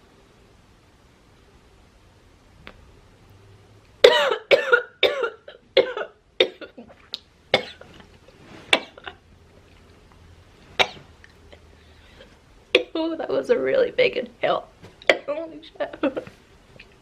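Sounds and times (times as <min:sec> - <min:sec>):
woman coughing hard: 0:04.0 - 0:06.9, 0:07.6 - 0:07.8, 0:08.7 - 0:09.2.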